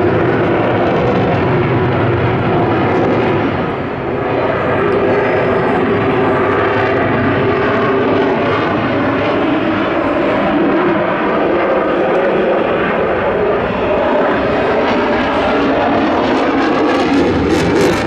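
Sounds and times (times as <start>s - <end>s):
jet engines in flight: 0.0s - 18.0s.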